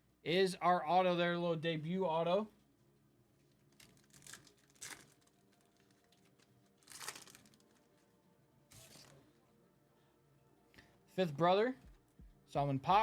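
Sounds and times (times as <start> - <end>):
wrapper crinkling and tearing: 3.4 - 9.2.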